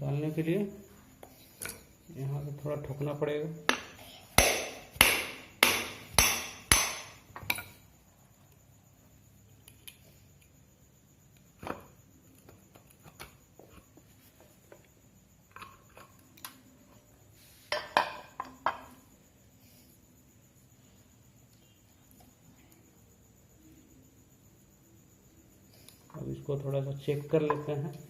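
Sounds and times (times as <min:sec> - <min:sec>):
hammer striking metal: 0:03.7 - 0:07.7.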